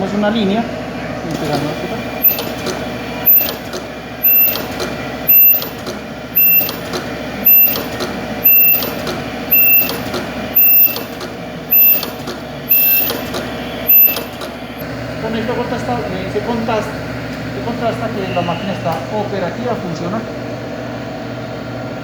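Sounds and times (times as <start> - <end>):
steady machine hum: 0.0 - 22.0
high-pitched welder buzz: 1.7 - 14.8.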